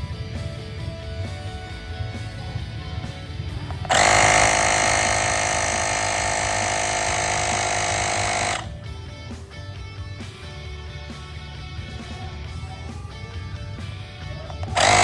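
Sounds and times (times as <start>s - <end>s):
tyre inflator compressor running: 0.0s - 15.0s.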